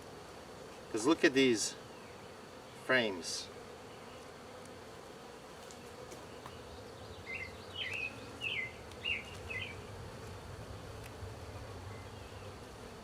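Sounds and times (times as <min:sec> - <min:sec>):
honeybees buzzing: 0:00.0 - 0:13.0
bird chirping: 0:06.2 - 0:09.9, 0:11.9 - 0:12.5.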